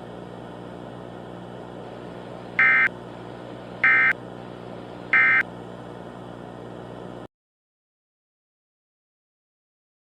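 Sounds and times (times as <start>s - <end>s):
steady low hum: 0.0s - 7.3s
digital data tone bursts: 2.6s - 2.9s, 3.8s - 4.2s, 5.2s - 5.4s.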